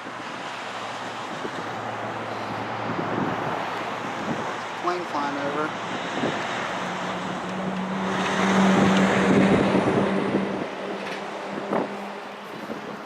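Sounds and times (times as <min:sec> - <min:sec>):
aircraft passing overhead: 0:05.4 - 0:13.0.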